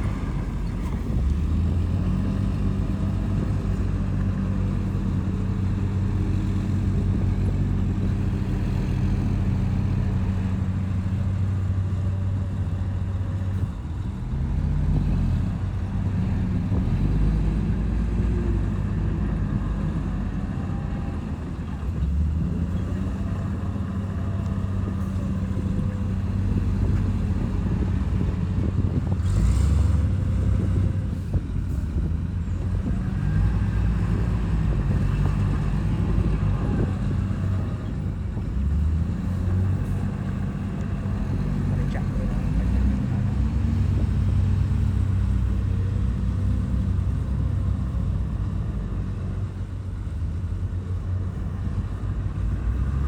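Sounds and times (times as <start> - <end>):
heavy diesel engine under load: 0.0 - 53.0.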